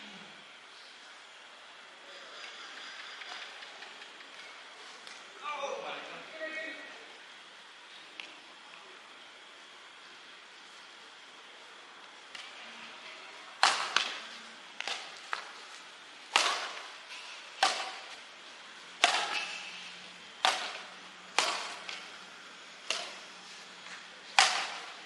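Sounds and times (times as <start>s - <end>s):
rackets hitting shuttlecock: 13.6s - 15.7s, 16.3s - 22.2s, 22.8s - 25.0s.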